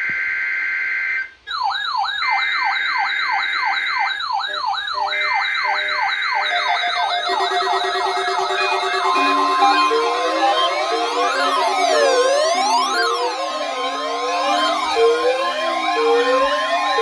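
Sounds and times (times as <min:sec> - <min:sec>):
screeching digital data bursts: 0:04.5 - 0:17.0
electronic siren-like tone sweeping: 0:05.0 - 0:17.0
beeps and sliding tones: 0:06.4 - 0:17.0.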